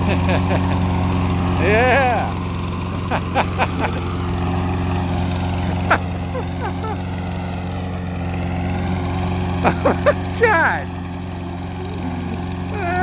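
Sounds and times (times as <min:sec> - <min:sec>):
lawnmower engine running: 0:00.0 - 0:13.0.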